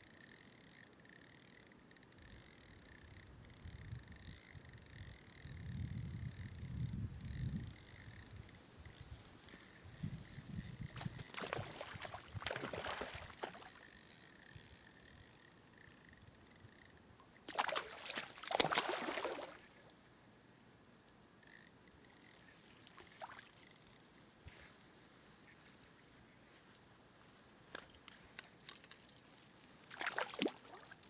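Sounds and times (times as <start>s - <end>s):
stream water splashing: 11.0s - 13.9s, 17.4s - 19.9s, 29.9s - 31.0s.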